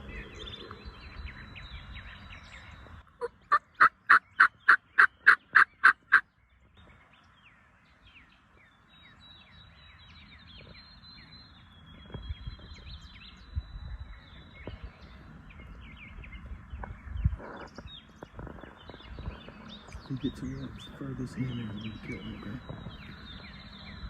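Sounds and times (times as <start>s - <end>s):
faint songbirds chirping: 0.0s - 24.0s
turkey yelping: 3.2s - 6.2s.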